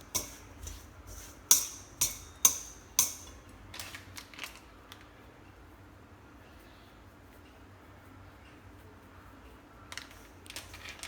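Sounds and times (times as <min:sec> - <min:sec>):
utensils clicking against a bowl: 0:00.0 - 0:03.5.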